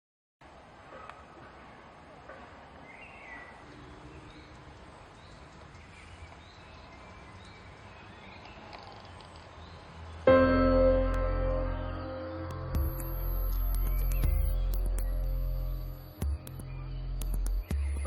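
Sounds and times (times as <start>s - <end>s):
faint background noise: 0.4s - 18.0s
music with sustained notes: 10.3s - 18.0s.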